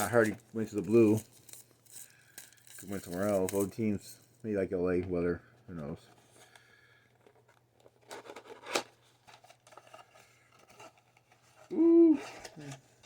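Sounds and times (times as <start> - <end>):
cardboard and wrapping rustling: 0.0 - 13.0.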